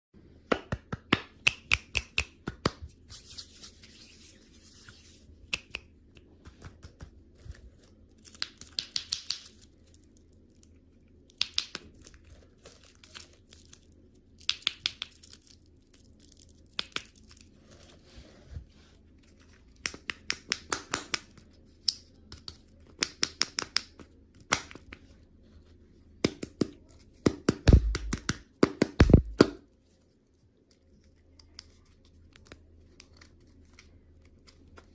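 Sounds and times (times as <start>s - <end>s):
candy wrapper crinkling: 7.8s - 17.6s.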